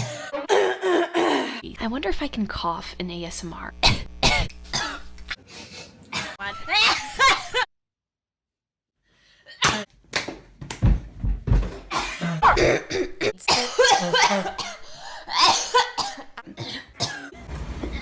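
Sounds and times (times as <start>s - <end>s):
woman coughing: 0.0s - 1.5s, 3.8s - 5.1s, 6.1s - 7.7s, 11.9s - 17.4s.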